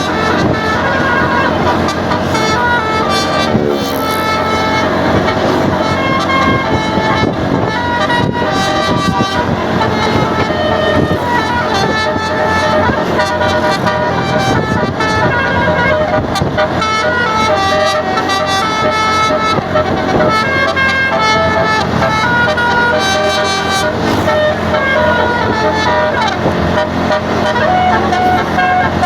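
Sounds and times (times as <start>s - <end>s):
bus musical air horn melody: 0.0s - 29.0s.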